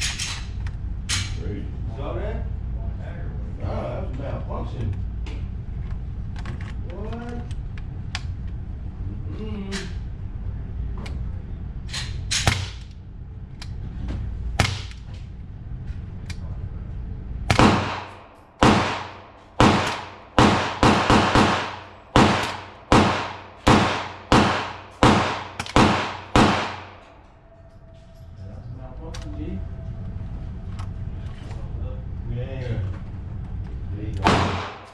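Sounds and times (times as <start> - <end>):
low steady rumble: 0.0 - 34.9
pistol shots: 17.5 - 27.1, 34.2 - 34.9.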